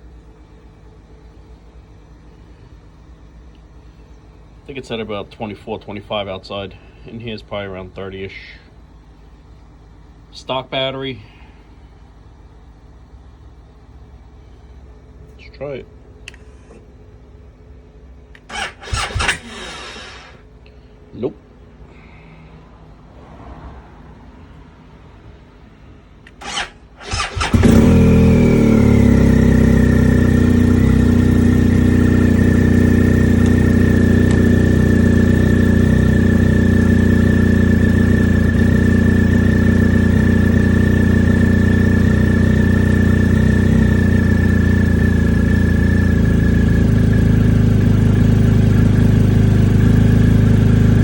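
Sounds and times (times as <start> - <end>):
motorcycle engine starting and idling: 18.3 - 20.6, 26.2 - 51.0
high whine: 18.3 - 51.0.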